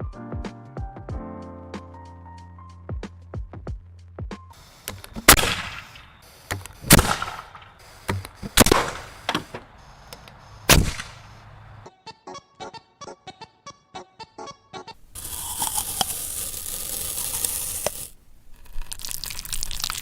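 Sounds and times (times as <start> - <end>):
background music: 0.0 - 4.9, 11.8 - 15.0
smaller pops: 4.8 - 11.2
launcher firing loud bangs: 5.2 - 6.0, 6.8 - 7.6, 8.6 - 9.2, 10.7 - 11.2.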